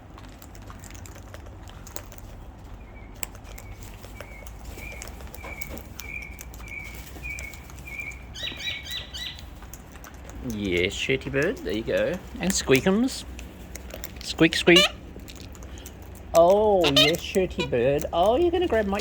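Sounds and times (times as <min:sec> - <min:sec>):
bird chirping: 0:02.7 - 0:09.6, 0:14.6 - 0:15.1, 0:16.8 - 0:19.0.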